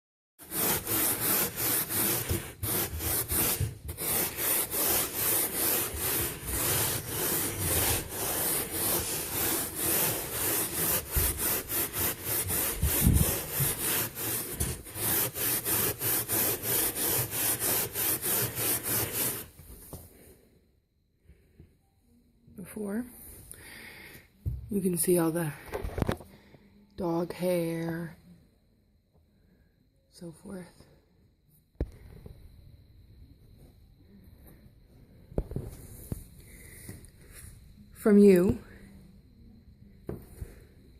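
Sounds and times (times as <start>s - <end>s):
carpet scrubbing: 0.4s - 19.7s.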